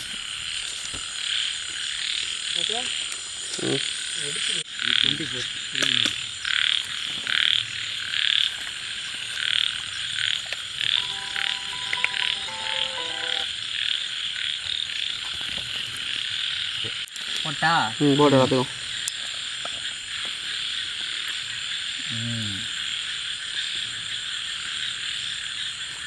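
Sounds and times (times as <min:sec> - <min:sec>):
frogs croaking: 0:00.0 - 0:26.0
insects chirring: 0:00.2 - 0:13.5.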